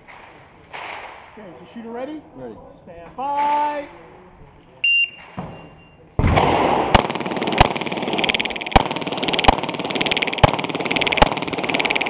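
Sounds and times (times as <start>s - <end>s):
pistol shots: 6.2s - 12.0s
steady rushing noise: 7.0s - 12.0s.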